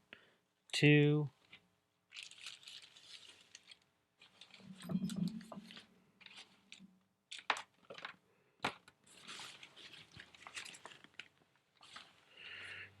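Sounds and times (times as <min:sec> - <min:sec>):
packaging rustling and crinkling: 0:02.1 - 0:04.9, 0:08.8 - 0:12.3.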